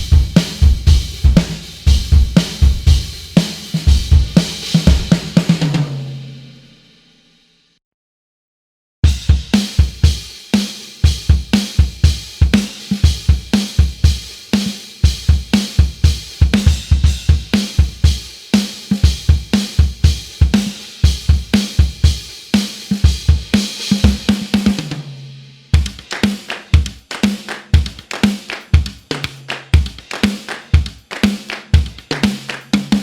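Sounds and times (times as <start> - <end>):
drum fill on low tom: 0.0 - 6.7, 9.1 - 28.2, 28.8 - 33.0
drum kit groove: 0.0 - 6.8, 9.0 - 33.0.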